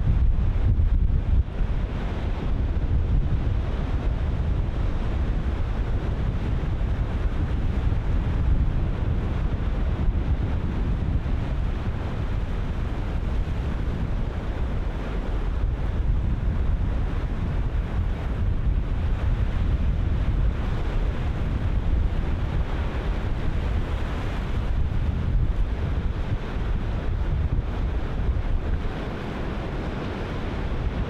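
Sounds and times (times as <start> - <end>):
wind buffeting microphone: 0.0 - 31.0
ocean surf breaking: 25.8 - 31.0.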